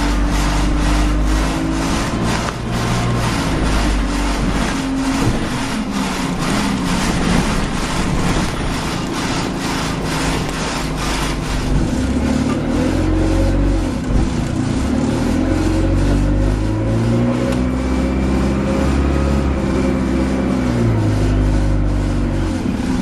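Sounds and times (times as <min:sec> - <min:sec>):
loud regular ticking: 0:00.0 - 0:16.7.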